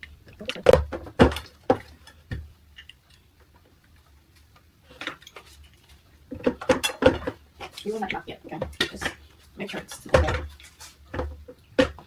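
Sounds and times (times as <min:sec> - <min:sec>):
drying rack parts clicking and knocking: 0:06.3 - 0:12.0.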